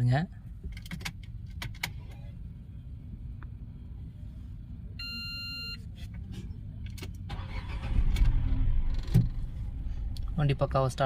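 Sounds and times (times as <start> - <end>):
car engine cranking and starting: 7.0 - 11.0.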